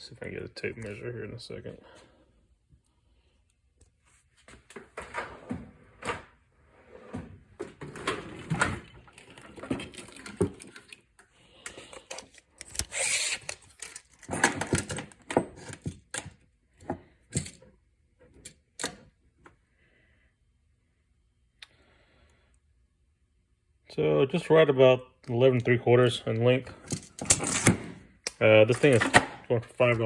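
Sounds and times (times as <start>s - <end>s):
tools clicking and knocking: 11.7s - 17.7s, 26.8s - 29.4s
tape measure blade scraping out: 12.8s - 13.7s.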